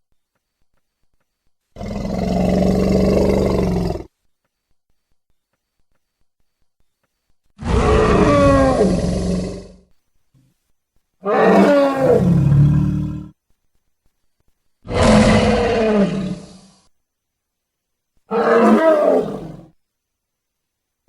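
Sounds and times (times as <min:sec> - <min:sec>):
creature roars with deep rumble: 0:01.8 - 0:04.1, 0:07.6 - 0:09.8, 0:11.2 - 0:13.3, 0:14.9 - 0:16.8, 0:18.3 - 0:19.7.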